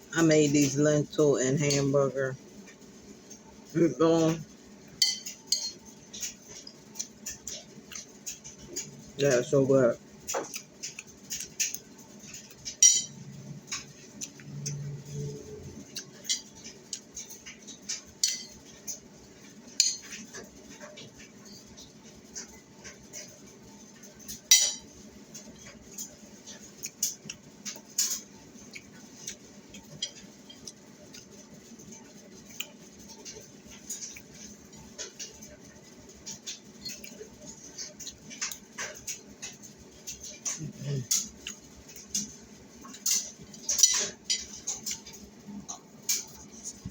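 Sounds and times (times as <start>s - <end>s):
soft eating sounds: 0.0s - 46.9s
cutlery clinking on plate: 5.0s - 6.4s, 10.4s - 13.9s, 24.5s - 24.9s, 42.9s - 46.4s.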